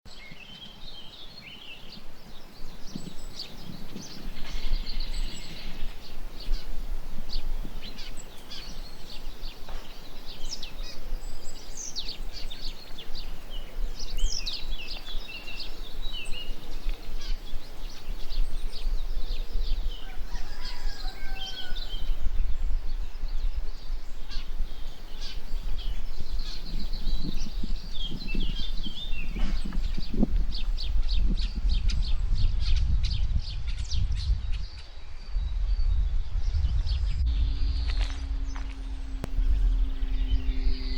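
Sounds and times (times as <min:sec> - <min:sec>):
small birds chirping: 0:00.1 - 0:40.9
low rumble: 0:34.6 - 0:40.9.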